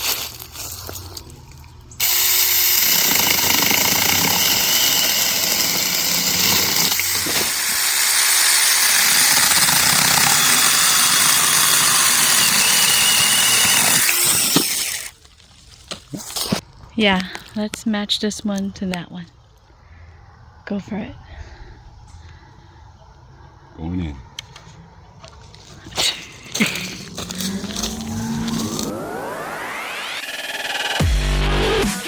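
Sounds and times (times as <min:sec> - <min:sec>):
electric chainsaw cutting wood: 0:02.0 - 0:15.1, 0:26.6 - 0:32.0.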